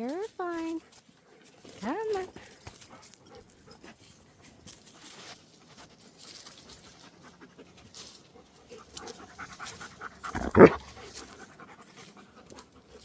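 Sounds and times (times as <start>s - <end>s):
faint rustles and scuffs: 0.0s - 9.9s
dogs panting: 0.5s - 13.0s.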